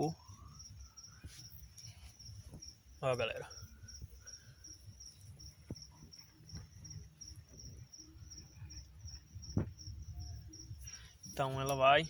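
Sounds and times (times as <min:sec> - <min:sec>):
cricket chirping: 0:00.0 - 0:12.0.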